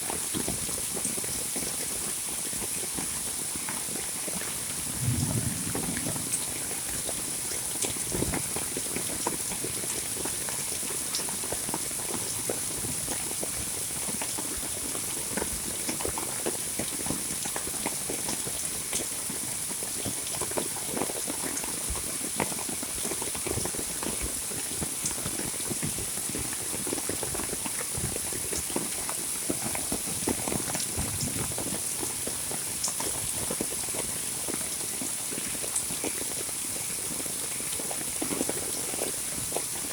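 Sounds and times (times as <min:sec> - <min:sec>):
raindrops ticking and splashing: 0:00.0 - 0:39.9
heavy rain falling: 0:03.1 - 0:13.5, 0:25.1 - 0:39.9.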